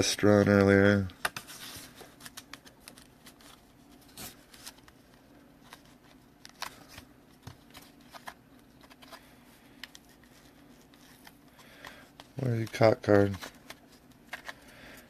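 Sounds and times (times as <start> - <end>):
steady low hum: 0.0 - 15.0
trading cards rustling and clicking: 0.2 - 15.0.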